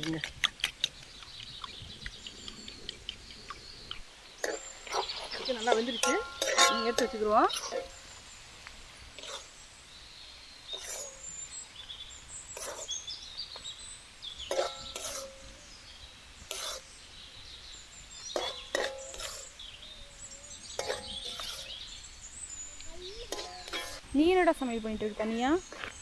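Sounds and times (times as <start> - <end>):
birds chirping: 0.0 - 26.0
ladle scraping cooking pan: 4.4 - 8.0, 9.2 - 9.5, 10.7 - 11.4, 12.5 - 12.9, 14.5 - 15.4, 16.5 - 16.9, 18.4 - 19.6, 20.7 - 21.8, 23.3 - 24.1.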